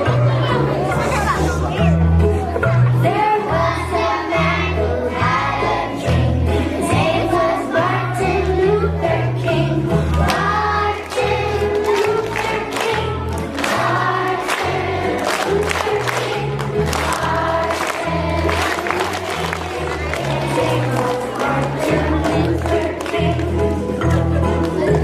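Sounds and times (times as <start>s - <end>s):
choir singing: 3.1s - 23.8s.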